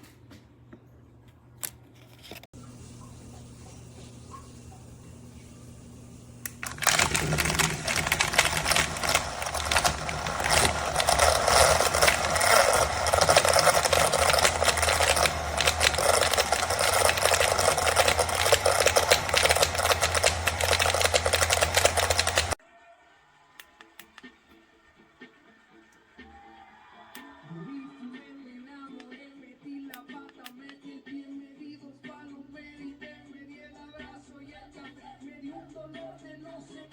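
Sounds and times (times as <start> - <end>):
blender motor with rattling: 5.7 - 22.6.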